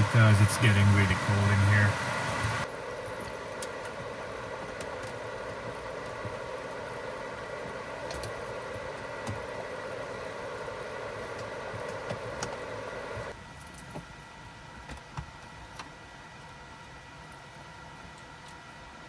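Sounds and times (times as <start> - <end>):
steady running hum: 0.0 - 19.0.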